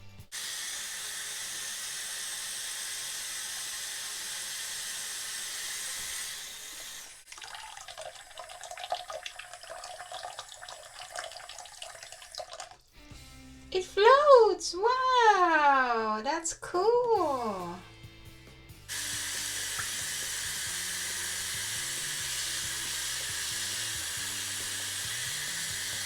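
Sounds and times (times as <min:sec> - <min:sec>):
water running from a tap: 0:00.3 - 0:12.9, 0:18.9 - 0:26.0
water trickling and splashing: 0:07.2 - 0:12.8.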